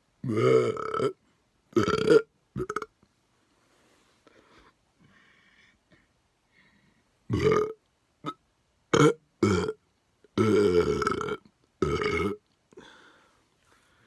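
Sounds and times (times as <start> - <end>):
person burping: 0.2 - 1.2, 1.8 - 2.9, 7.3 - 8.4, 9.0 - 9.8, 10.4 - 12.4.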